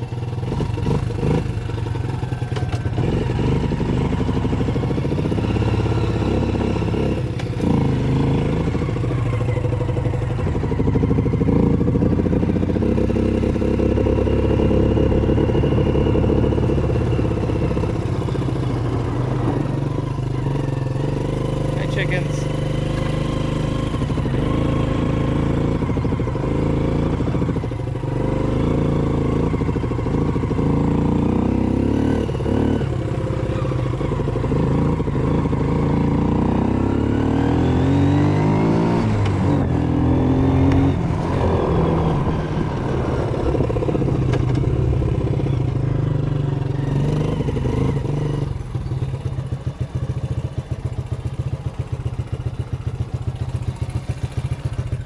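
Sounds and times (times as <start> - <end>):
atv engine revving and idling: 0.0 - 55.0.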